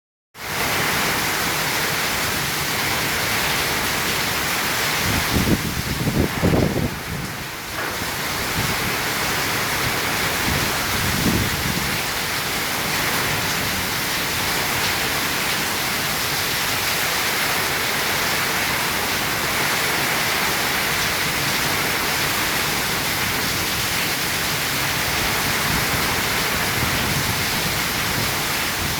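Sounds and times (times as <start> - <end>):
heavy rain pouring: 0.4 - 28.9.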